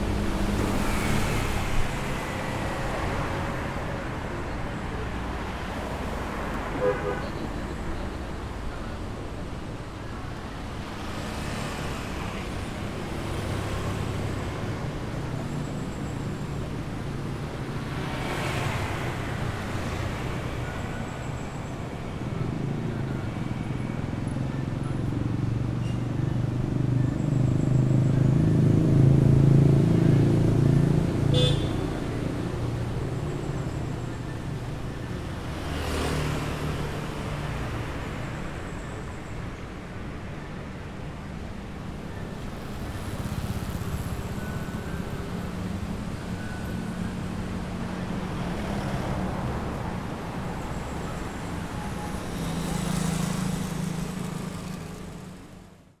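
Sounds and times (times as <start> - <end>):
traffic engines rumbling: 0.0 - 56.0
vehicles passing close by: 0.0 - 56.0
car horn toot: 31.3 - 31.9.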